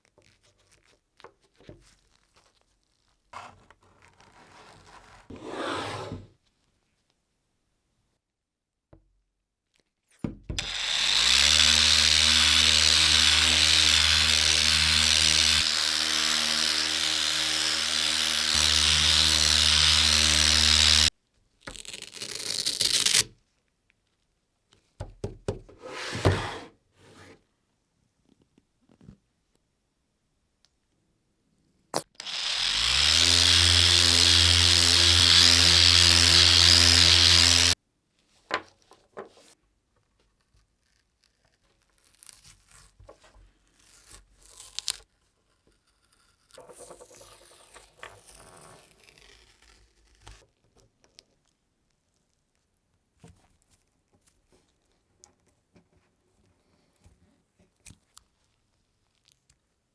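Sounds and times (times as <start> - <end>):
scraping and rustling from handling: 0.0 - 6.3
small electric power tool running: 10.6 - 21.1, 32.2 - 37.8.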